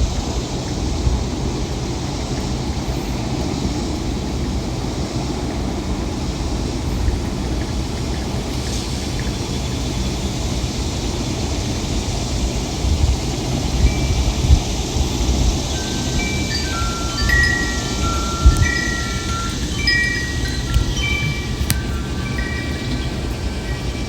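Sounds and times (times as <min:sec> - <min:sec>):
wind blowing across microphone: 0:00.0 - 0:24.0.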